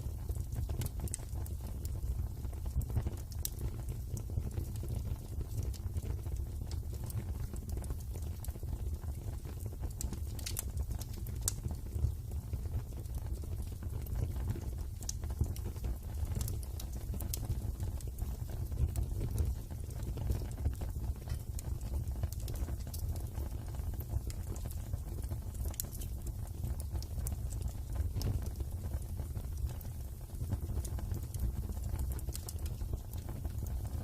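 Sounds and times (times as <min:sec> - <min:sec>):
wood fire crackling: 0:00.0 - 0:34.0.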